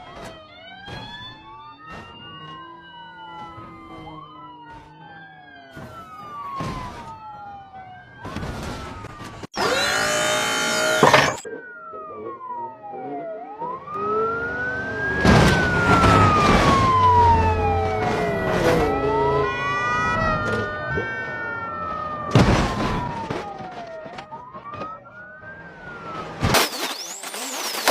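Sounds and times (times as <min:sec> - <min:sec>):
siren wailing: 0:00.0 - 0:27.9
loud crashes and bangs: 0:22.2 - 0:23.7.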